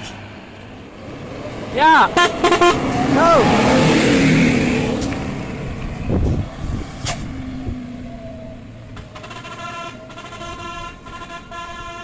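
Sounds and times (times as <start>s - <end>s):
road traffic: 0.0s - 12.0s
vehicle horn: 2.1s - 3.0s, 9.1s - 12.0s.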